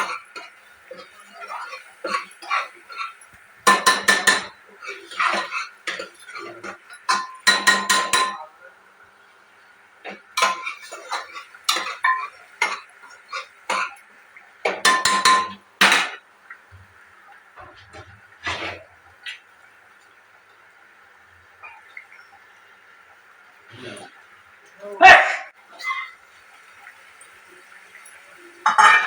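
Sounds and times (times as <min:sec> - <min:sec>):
spoon scraping metal pan: 0:00.0 - 0:08.4, 0:10.1 - 0:14.0, 0:17.6 - 0:18.9.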